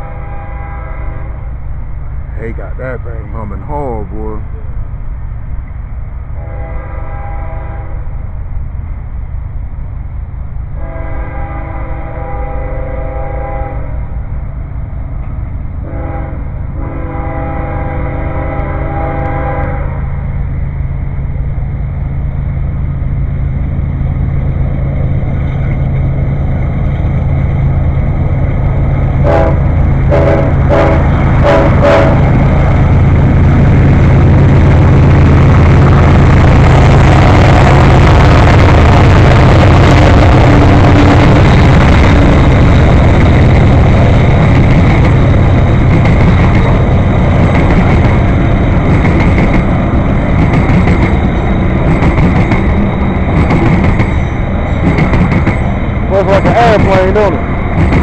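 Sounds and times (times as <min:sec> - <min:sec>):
locomotive air horn blasts: 0:00.0 - 0:01.5, 0:06.4 - 0:08.2, 0:10.8 - 0:14.0, 0:15.8 - 0:20.2, 0:29.2 - 0:32.4
diesel locomotives humming: 0:00.0 - 0:58.0
rail noise: 0:00.0 - 0:58.0.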